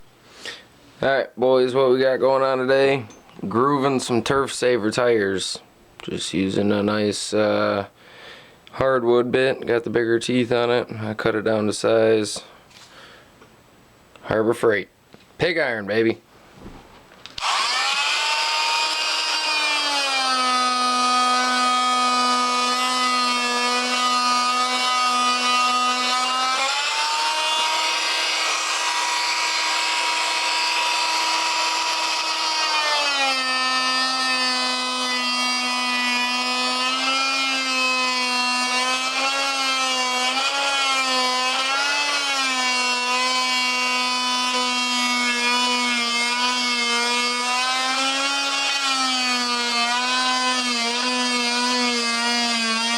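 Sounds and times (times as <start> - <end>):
oscillating multi-tool buzzing whine: 17.4 - 52.9.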